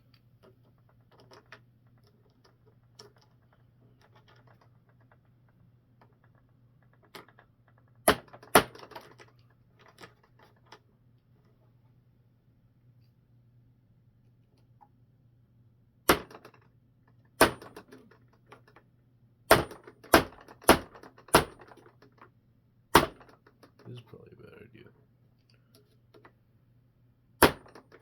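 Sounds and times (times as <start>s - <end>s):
small parts clicking and rattling: 0.1s - 10.9s.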